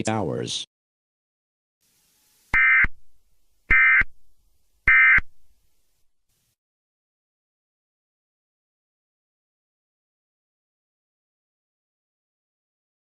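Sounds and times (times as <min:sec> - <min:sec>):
buzzy digital tone bursts: 0:01.8 - 0:04.1, 0:04.9 - 0:05.3.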